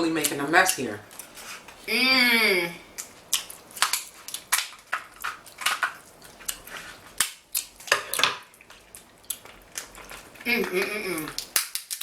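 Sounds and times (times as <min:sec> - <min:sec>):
crab shells cracking: 0:03.0 - 0:10.3, 0:11.2 - 0:12.0.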